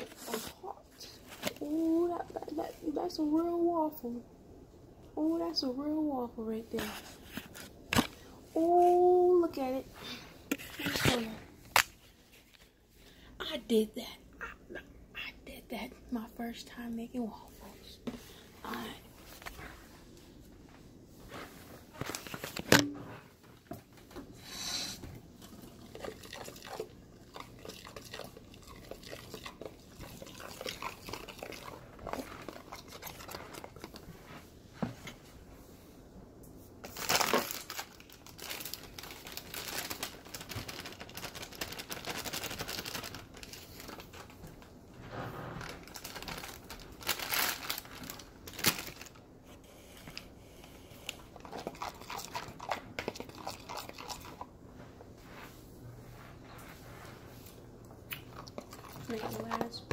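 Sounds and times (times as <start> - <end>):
crinkling and rustling: 0.0 - 3.5, 6.6 - 12.8, 17.5 - 24.4, 25.1 - 35.4, 36.5 - 59.9.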